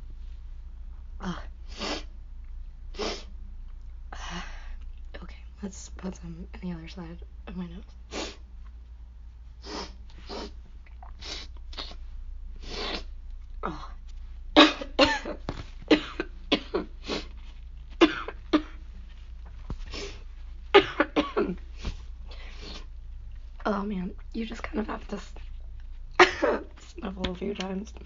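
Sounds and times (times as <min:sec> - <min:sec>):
woman coughing rapidly: 0:14.6 - 0:16.9, 0:18.0 - 0:18.8, 0:20.7 - 0:21.6, 0:26.2 - 0:26.8.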